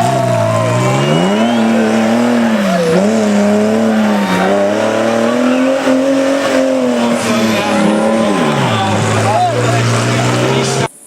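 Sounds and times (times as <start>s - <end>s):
off-road buggy engine revving: 0.0s - 11.0s.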